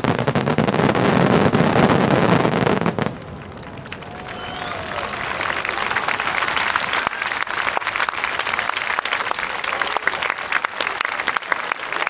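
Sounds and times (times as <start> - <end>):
crowd applauding: 3.0 - 12.0.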